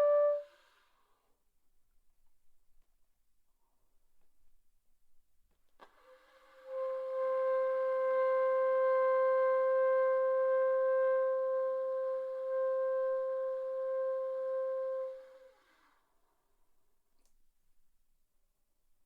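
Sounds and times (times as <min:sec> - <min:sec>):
saxophone long note: 0:06.6 - 0:15.5.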